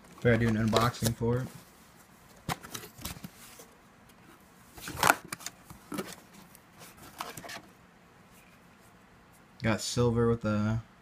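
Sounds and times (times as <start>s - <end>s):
packaging rustling: 0.1s - 1.4s.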